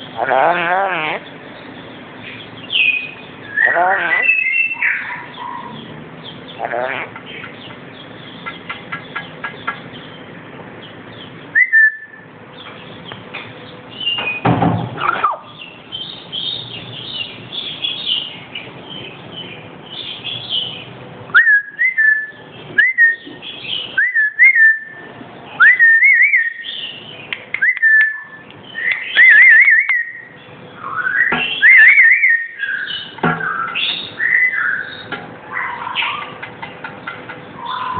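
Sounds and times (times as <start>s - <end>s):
parrot chatter: 0.0s - 10.2s, 15.0s - 18.7s, 26.8s - 30.2s, 30.8s - 37.9s
harsh squawk: 0.1s - 1.3s, 3.5s - 5.8s, 6.6s - 7.4s, 30.8s - 36.5s, 37.6s - 37.9s
rising whistles: 11.6s - 12.2s, 21.3s - 23.3s, 23.9s - 25.0s, 25.6s - 26.8s, 27.6s - 35.1s.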